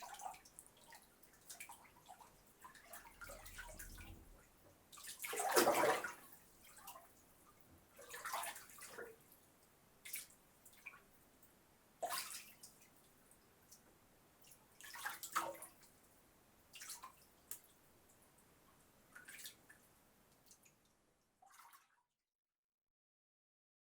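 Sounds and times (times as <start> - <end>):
water splashing and dripping: 0.1 - 7.0.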